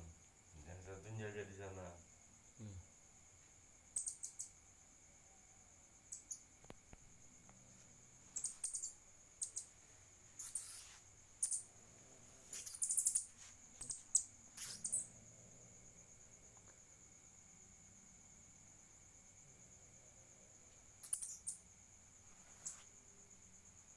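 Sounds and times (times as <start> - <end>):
rodent squeaking: 10.4 - 11.6, 12.5 - 15.0.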